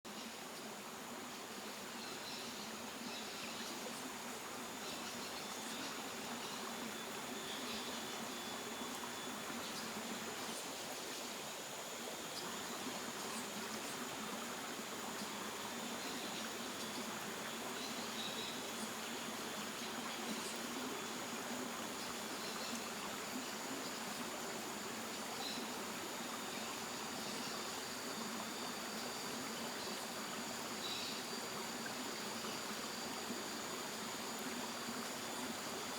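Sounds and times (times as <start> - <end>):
waterfall: 0.1 - 35.9.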